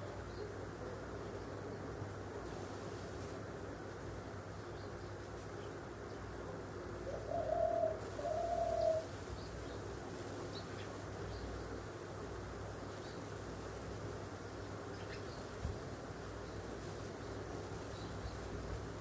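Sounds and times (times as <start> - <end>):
dove cooing: 7.1 - 9.1.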